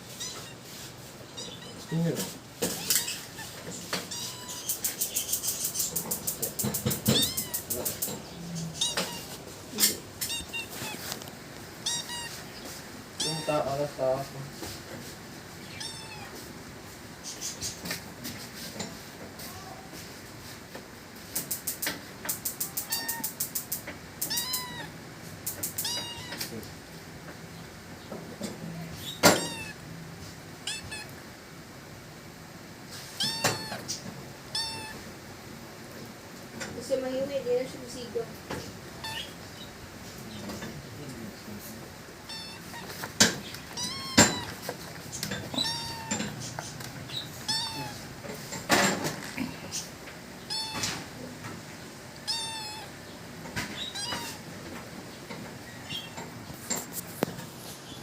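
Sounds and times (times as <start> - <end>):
cat meowing: 0.0 - 5.0, 6.0 - 13.9, 15.6 - 16.4, 22.5 - 26.7, 28.7 - 29.8, 30.6 - 31.2, 33.0 - 35.1, 39.0 - 39.4, 42.2 - 46.7, 47.3 - 48.1, 50.4 - 51.1, 52.2 - 53.0, 53.8 - 54.5.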